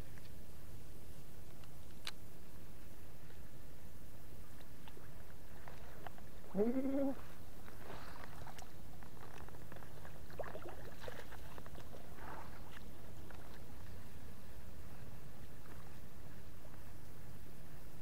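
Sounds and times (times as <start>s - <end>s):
background hiss: 0.0s - 18.0s
animal call rising in pitch: 6.5s - 7.2s.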